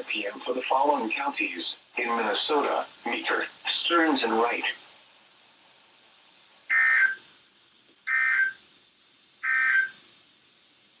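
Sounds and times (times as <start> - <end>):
short digital data bursts: 6.7 - 7.2, 8.1 - 8.6, 9.4 - 10.0.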